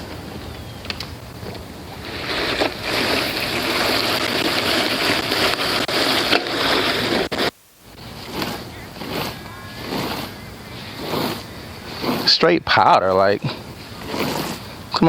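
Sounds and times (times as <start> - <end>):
granules hissing patter: 2.0 - 10.2.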